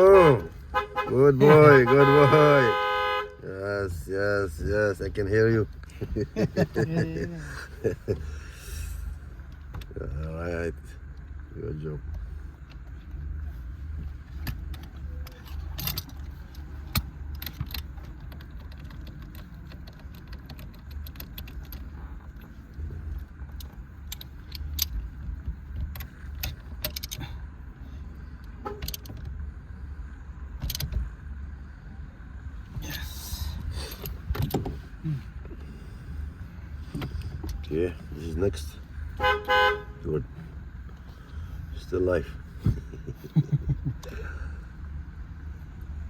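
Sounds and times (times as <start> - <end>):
metal rattle: 14.2 - 27.4
metallic clicks of hand tools: 25.9 - 27.2.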